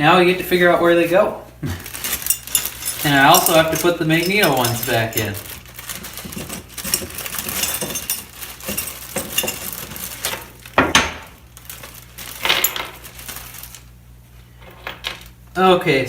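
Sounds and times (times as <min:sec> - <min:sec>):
metal screws clinking: 0:02.0 - 0:10.4.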